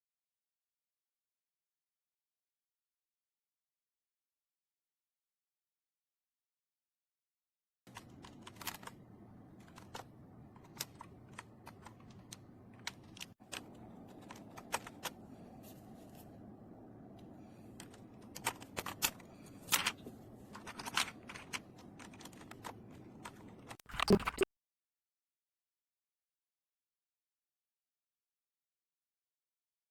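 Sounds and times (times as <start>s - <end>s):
mechanical keyboard typing: 20.6s - 24.4s.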